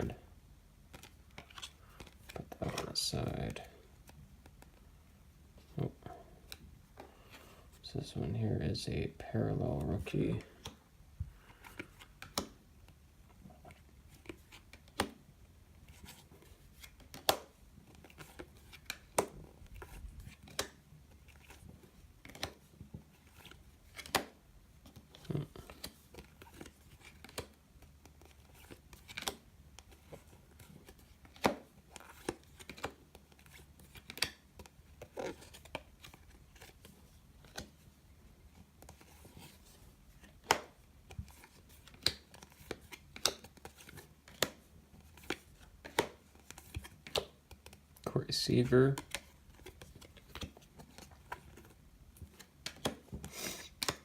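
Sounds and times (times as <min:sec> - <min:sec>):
trading cards flipping: 0:00.9 - 0:04.8, 0:15.8 - 0:37.8, 0:38.8 - 0:48.1, 0:48.7 - 0:54.0.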